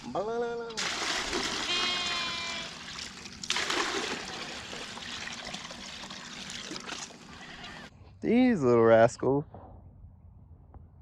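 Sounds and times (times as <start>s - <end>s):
water pouring and splashing: 0.7s - 7.4s.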